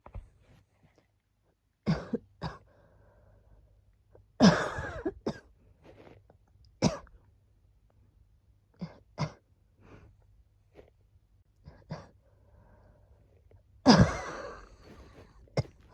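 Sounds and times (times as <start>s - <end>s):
woman coughing: 1.9s - 2.6s, 4.4s - 5.4s, 6.8s - 7.1s, 13.9s - 15.9s.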